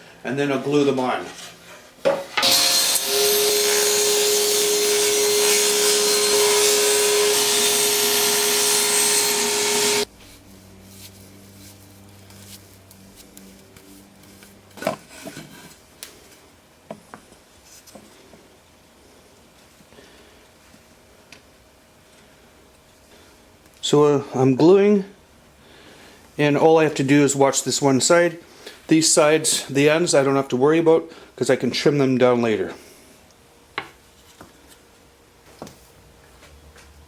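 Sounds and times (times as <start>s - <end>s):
table saw cutting wood: 2.4s - 10.1s.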